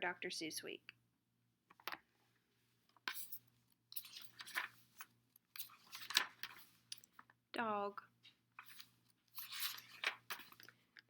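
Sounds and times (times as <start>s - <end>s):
book pages turning: 4.0s - 6.8s, 8.6s - 10.7s.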